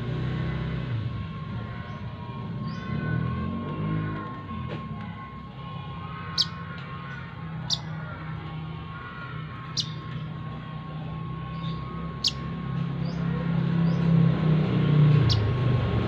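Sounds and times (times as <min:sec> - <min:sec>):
low rumble of passing traffic: 0:00.0 - 0:16.0
bird chirping: 0:06.3 - 0:08.1, 0:09.5 - 0:10.3, 0:11.5 - 0:14.1, 0:15.1 - 0:15.6.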